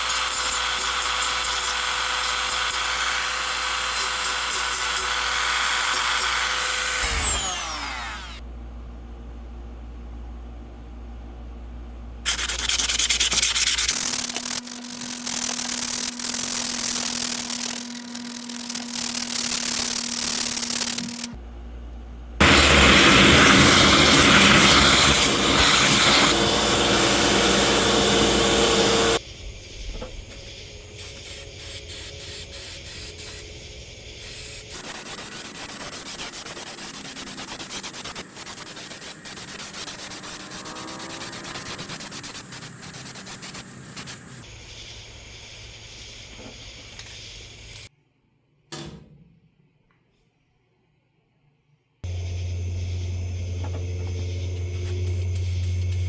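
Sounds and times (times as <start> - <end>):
loud hissing workshop noise: 0.0 - 8.4, 22.4 - 47.9, 52.0 - 56.0.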